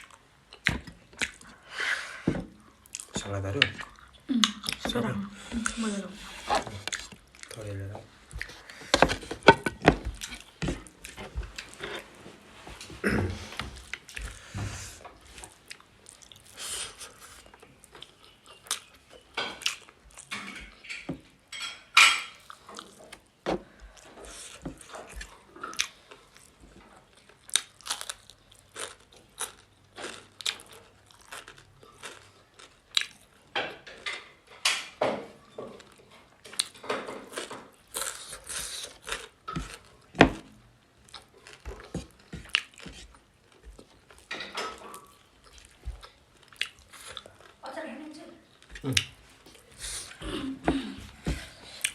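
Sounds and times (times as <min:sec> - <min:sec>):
chewing and crunching food: 0:00.0 - 0:51.9
dishes clinking: 0:20.3 - 0:22.4.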